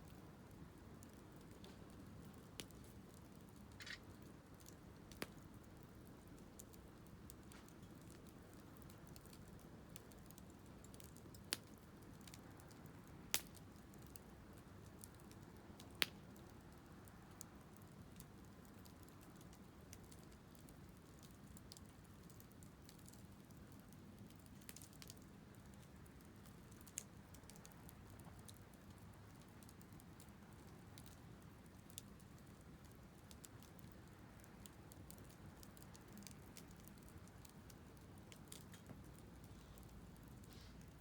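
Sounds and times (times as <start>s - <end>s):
wood fire crackling: 0.0s - 41.0s
fire low rumble: 24.4s - 41.0s.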